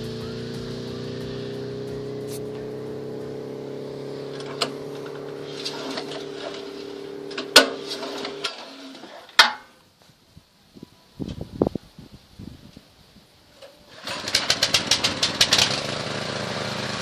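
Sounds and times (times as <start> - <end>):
low rumble: 0.0 - 7.1
small engine idling: 0.0 - 9.1, 13.6 - 17.0.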